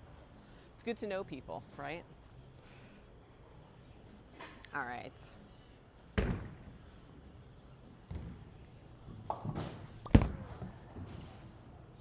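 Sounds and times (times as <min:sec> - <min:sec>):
bowling ball thud and rolling: 0:09.1 - 0:11.4.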